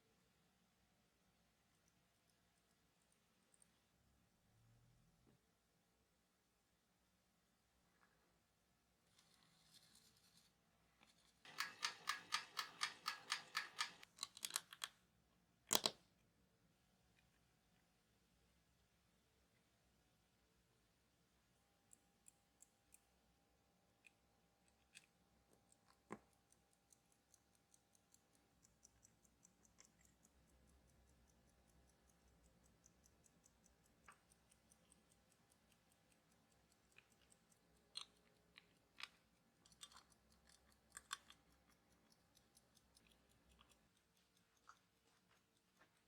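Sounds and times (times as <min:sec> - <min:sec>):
pocket watch ticking: 0:11.5 - 0:14.6, 0:24.9 - 0:45.8
metal tools clicking: 0:11.5 - 0:14.8.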